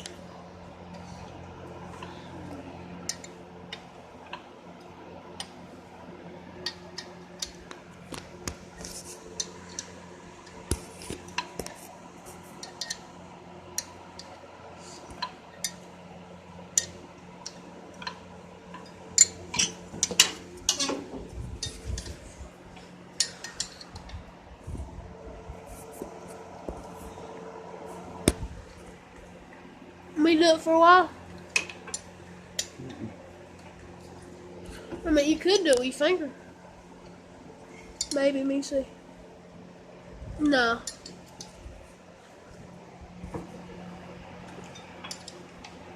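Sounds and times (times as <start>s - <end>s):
low steady hum: 0.0s - 45.9s.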